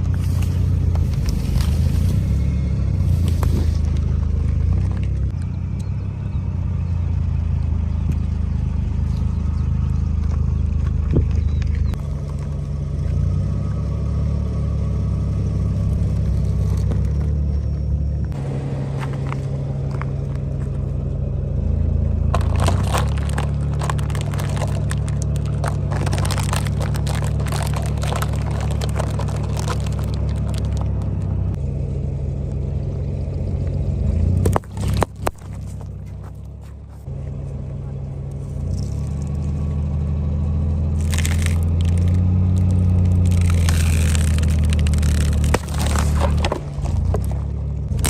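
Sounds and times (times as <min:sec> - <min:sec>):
car engine idling: 0:00.0 - 0:48.0
tyre crushing brittle objects: 0:22.2 - 0:31.4, 0:34.4 - 0:37.0, 0:40.9 - 0:48.0.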